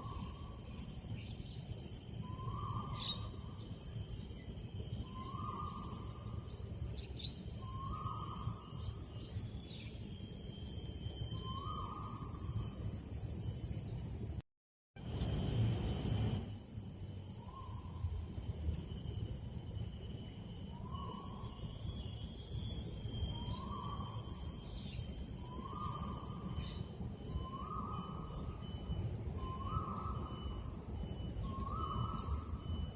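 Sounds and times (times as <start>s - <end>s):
low background rumble: 15.0s - 21.7s
faint high chirps: 15.0s - 32.9s.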